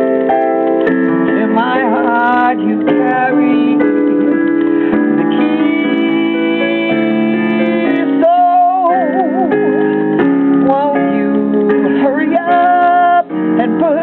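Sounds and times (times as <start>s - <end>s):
keyboard accompaniment: 0.0s - 14.0s
woman singing: 1.3s - 4.0s, 5.2s - 9.8s, 10.6s - 14.0s.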